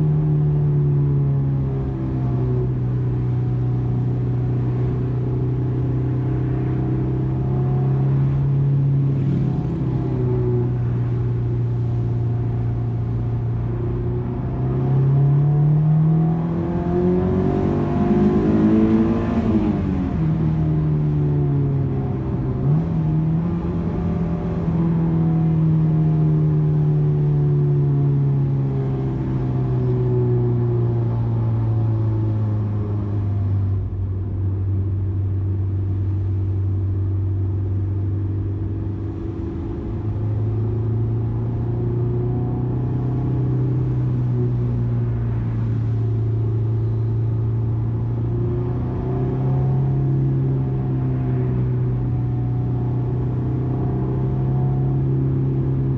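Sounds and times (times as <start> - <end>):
car engine running: 0.0 - 15.1, 29.3 - 55.9.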